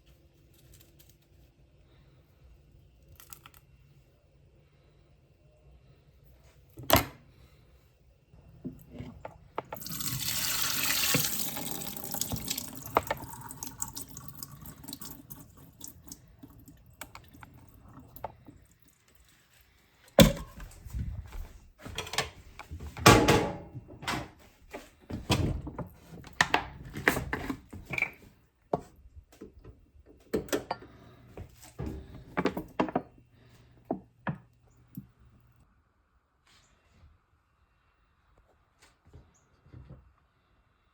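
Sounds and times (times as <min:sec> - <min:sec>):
tap water running into sink: 0:09.6 - 0:18.7.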